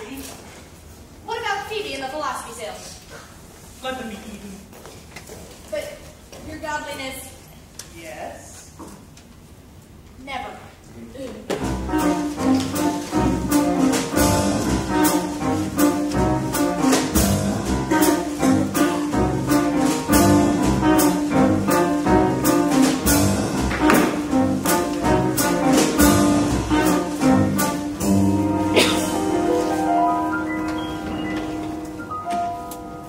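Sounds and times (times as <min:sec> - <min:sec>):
steady drum beat: 0:11.6 - 0:29.7
walking bass: 0:11.6 - 0:32.9.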